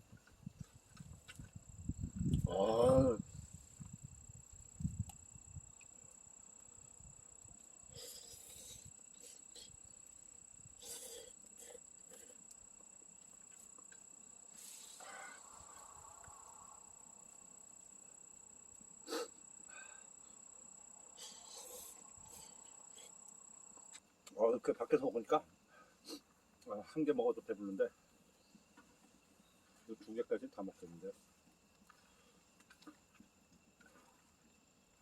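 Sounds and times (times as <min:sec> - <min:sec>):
high-pitched insect trill: 0:01.0 - 0:24.0.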